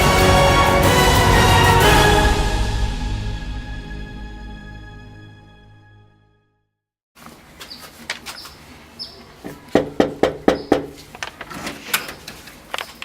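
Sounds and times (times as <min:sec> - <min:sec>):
bird chirps: 0:07.7 - 0:09.4, 0:10.5 - 0:10.8
sharp knocks: 0:09.7 - 0:11.0.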